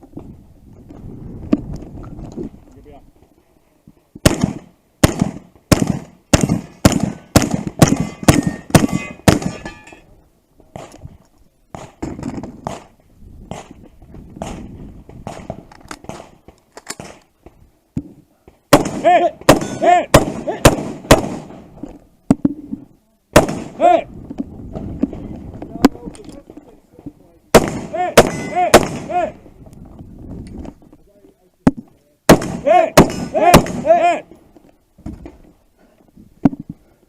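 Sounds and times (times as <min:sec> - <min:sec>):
gunshots: 0:04.2 - 0:09.7, 0:11.7 - 0:12.9, 0:18.7 - 0:21.7, 0:23.3 - 0:24.0, 0:27.5 - 0:29.4, 0:32.3 - 0:34.2.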